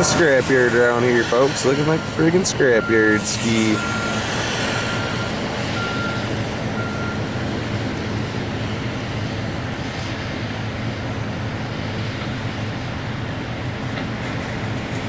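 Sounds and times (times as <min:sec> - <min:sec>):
backup alarm beeping: 0:00.0 - 0:07.4
diesel demolition machinery running: 0:00.0 - 0:15.0.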